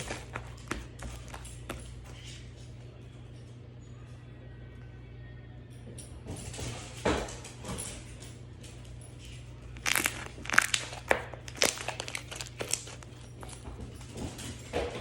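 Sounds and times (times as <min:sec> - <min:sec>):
low steady hum: 0:00.0 - 0:15.0
slime crackling and clicking: 0:09.8 - 0:13.2.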